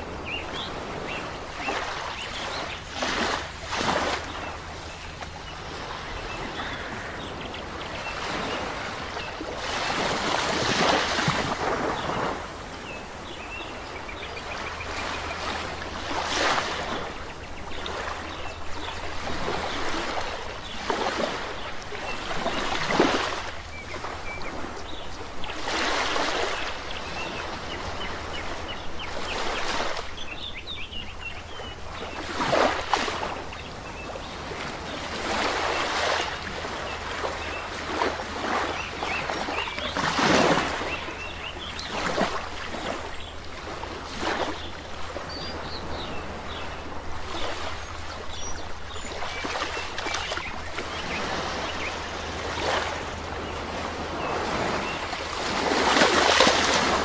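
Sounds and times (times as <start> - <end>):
sea waves washing onto shore: 0.0 - 57.0.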